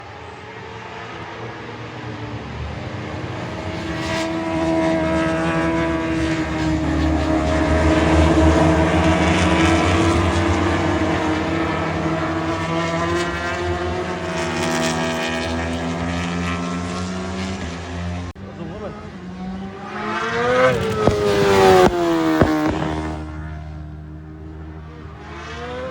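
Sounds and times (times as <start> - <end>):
racing motorcycle engines revving: 0.7 - 25.9.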